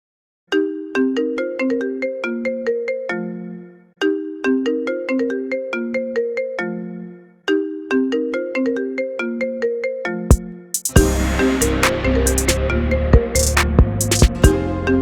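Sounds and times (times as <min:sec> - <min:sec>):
phone ringtone melody: 0:08.2 - 0:15.0.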